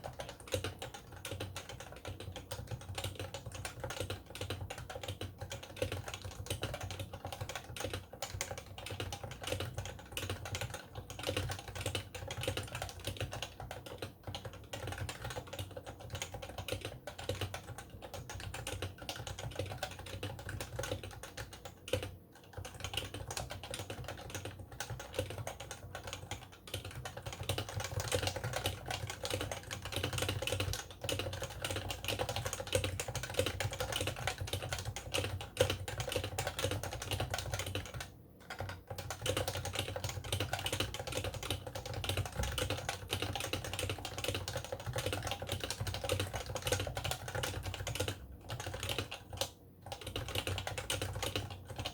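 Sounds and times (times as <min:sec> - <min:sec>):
keyboard typing: 0:00.0 - 0:51.9.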